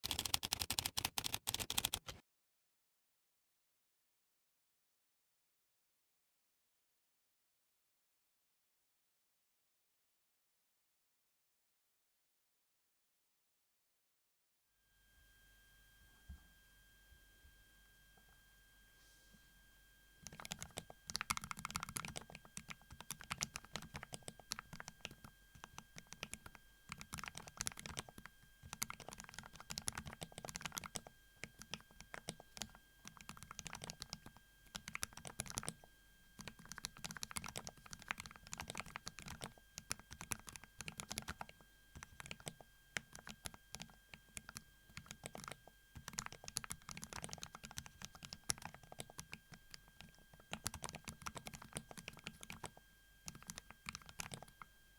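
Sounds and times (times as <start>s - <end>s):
mechanical keyboard typing: 0.0s - 2.2s, 20.2s - 35.8s, 36.4s - 52.7s, 53.3s - 54.7s.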